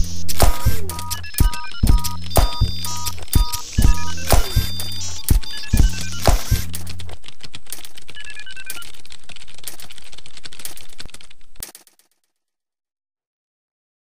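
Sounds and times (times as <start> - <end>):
short electronic beeps: 0.0 - 6.9
rapid keyboard clicking: 0.3 - 12.2.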